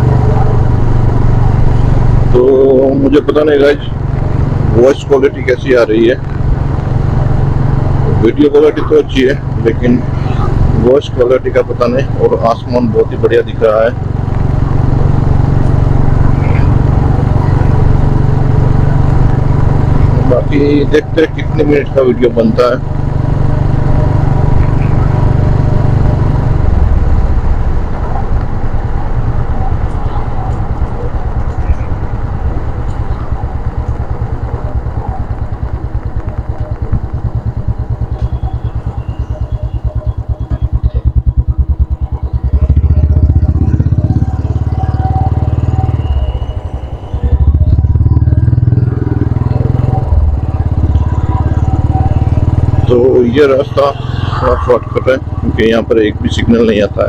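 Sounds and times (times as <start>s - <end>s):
motorcycle engine cruising: 0.0s - 57.0s.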